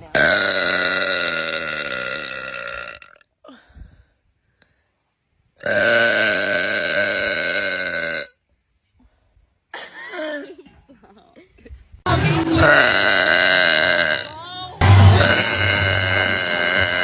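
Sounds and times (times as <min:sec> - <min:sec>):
person burping: 0:00.1 - 0:03.2, 0:05.6 - 0:08.4, 0:12.4 - 0:17.0.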